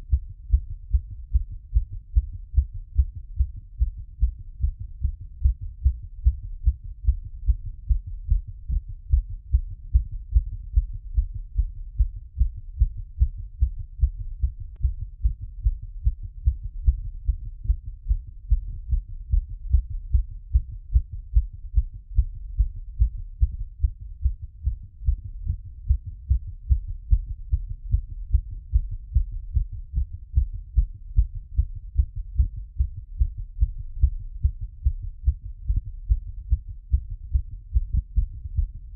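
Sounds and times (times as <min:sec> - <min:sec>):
heartbeat through stethoscope: 0:00.0 - 0:38.9.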